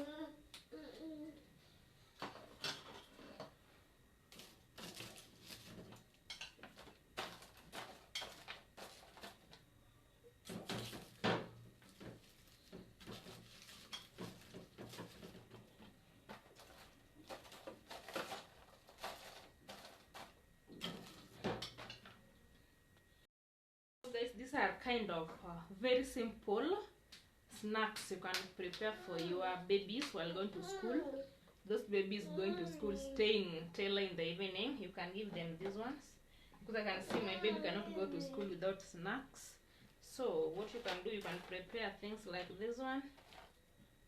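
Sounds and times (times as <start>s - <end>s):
kitchenware clattering: 7.7s - 8.5s.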